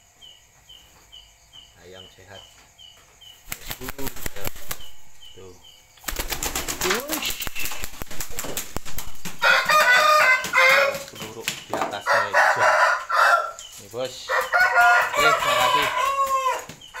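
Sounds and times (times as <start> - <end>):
rooster crowing: 9.4 - 11.1, 11.9 - 13.6, 14.2 - 17.0.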